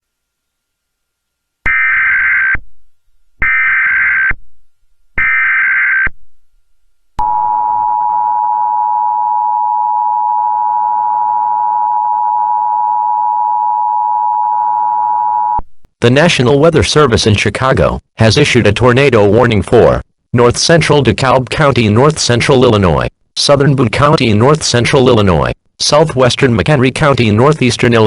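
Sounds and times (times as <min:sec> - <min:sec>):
two-tone attention signal: 0:07.2 - 0:15.6.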